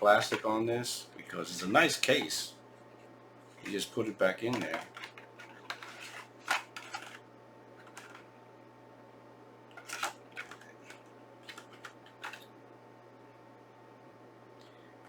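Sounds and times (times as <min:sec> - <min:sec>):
clicks of hard plastic handled: 0:04.4 - 0:07.2.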